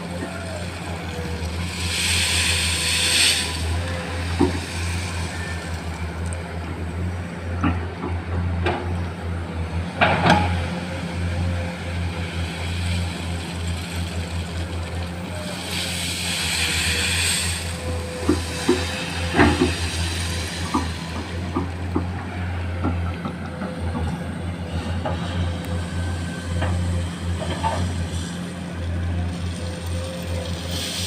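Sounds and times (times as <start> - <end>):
excavator diesel engine running: 0.0 - 31.0
hiss: 1.6 - 5.4, 15.4 - 21.0, 30.4 - 31.0.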